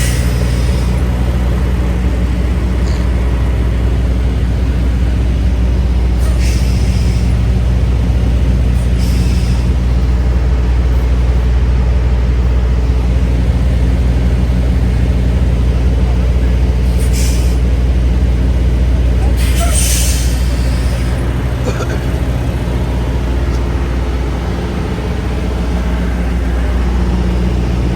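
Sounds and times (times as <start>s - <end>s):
air brakes hissing: 0.0s - 1.1s, 6.1s - 7.5s, 8.7s - 9.9s, 16.8s - 17.7s, 19.2s - 21.8s
diesel truck engine idling: 0.0s - 27.9s.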